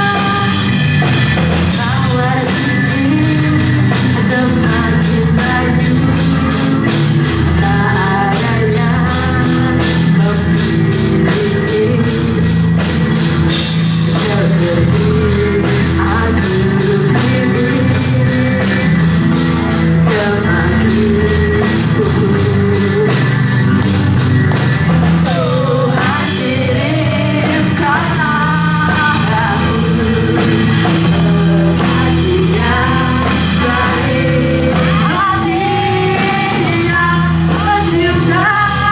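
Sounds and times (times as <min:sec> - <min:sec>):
person singing: 0:00.0 - 0:23.9, 0:25.0 - 0:38.9
fast steady drum beat: 0:00.0 - 0:38.9
rock band playing: 0:00.0 - 0:38.9.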